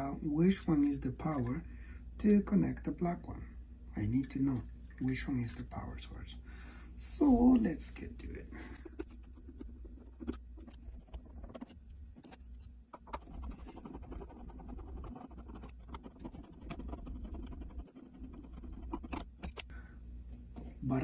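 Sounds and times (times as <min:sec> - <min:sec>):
low hum: 0:02.8 - 0:21.0
tools scraping and clicking: 0:08.8 - 0:19.7.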